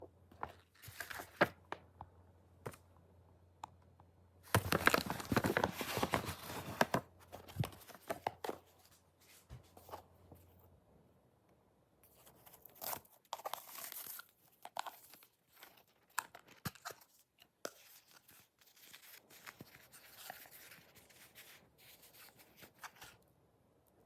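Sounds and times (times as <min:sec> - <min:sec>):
wrapping crinkling and tearing: 0:04.5 - 0:08.6, 0:12.3 - 0:23.2
packaging taps and rustles: 0:04.5 - 0:08.7.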